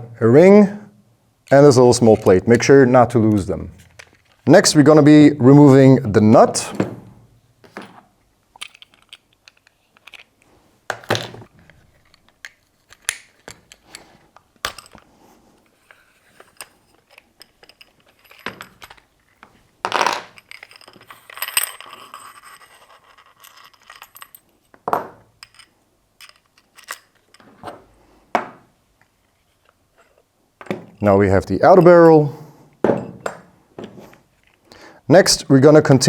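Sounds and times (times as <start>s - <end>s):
metal tools clinking and scraping: 15.7s - 19.5s, 20.3s - 24.6s.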